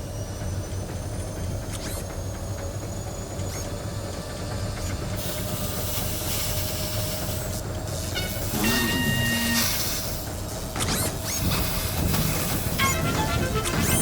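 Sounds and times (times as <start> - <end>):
washing machine rumble: 2.2 - 14.0
hiss: 5.2 - 10.3.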